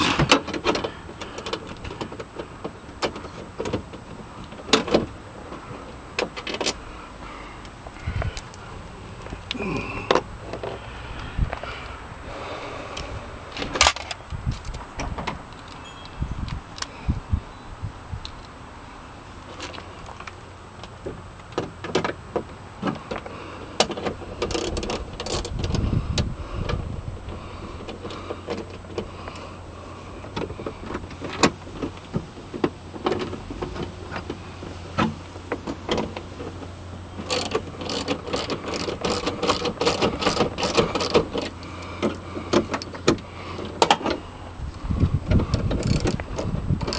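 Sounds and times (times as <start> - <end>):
tools and metal parts clattering: 13.5 - 16.6, 21.8 - 25.9, 30.2 - 44.2, 45.3 - 46.9.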